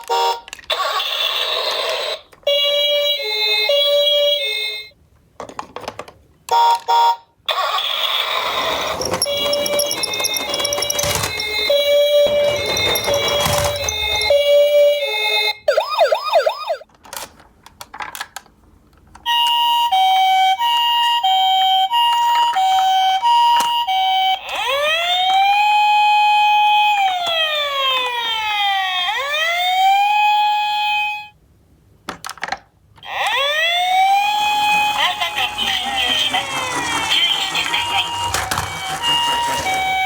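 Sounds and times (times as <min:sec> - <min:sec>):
electronic ambulance siren: 0:07.5 - 0:16.9, 0:19.6 - 0:31.2, 0:33.0 - 0:40.0.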